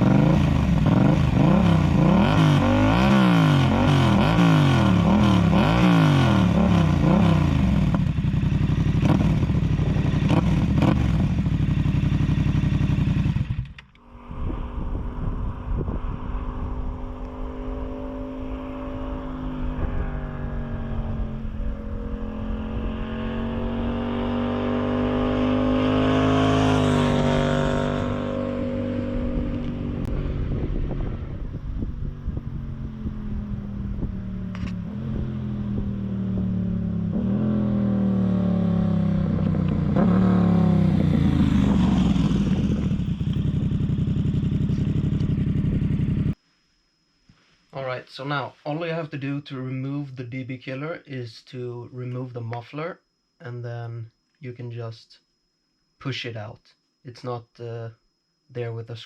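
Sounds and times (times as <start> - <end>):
motorcycle engine revving: 0.0 - 46.4.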